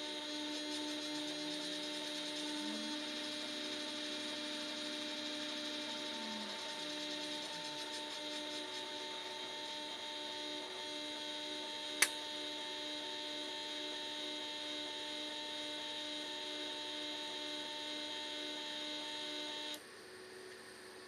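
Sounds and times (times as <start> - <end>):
electrical hum with high whine: 0.0 - 21.0
sharp click: 12.0 - 12.2.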